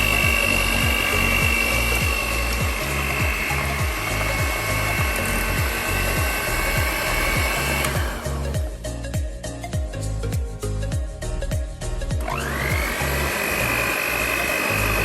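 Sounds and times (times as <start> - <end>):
electric mixer whining: 0.0 - 8.7, 12.2 - 15.0
background music with beat: 0.0 - 15.0.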